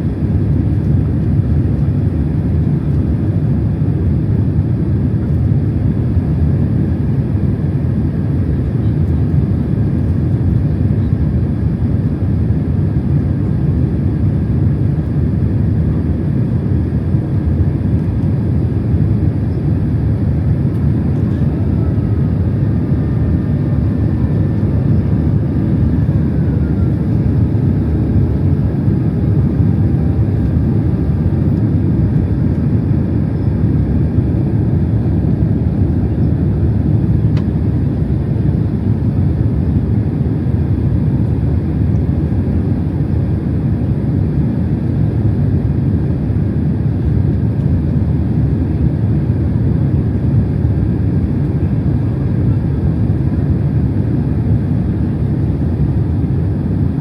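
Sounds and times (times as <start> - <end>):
airliner cabin engine rush: 0.0 - 57.0
faint engine tones: 16.9 - 37.9.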